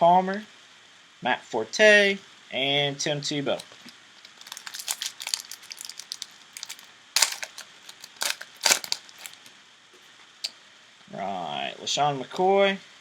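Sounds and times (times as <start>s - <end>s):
foil wrapper tearing and crinkling: 3.6s - 9.5s.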